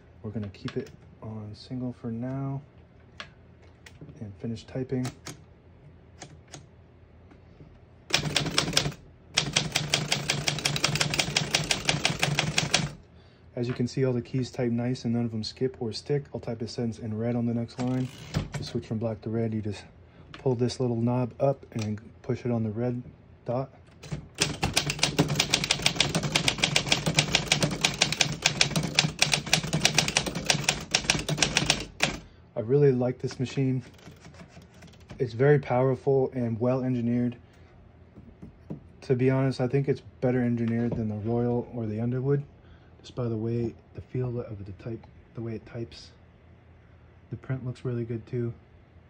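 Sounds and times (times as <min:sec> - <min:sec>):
typewriter keystrokes: 0:08.1 - 0:13.0, 0:24.0 - 0:32.3, 0:33.9 - 0:35.2.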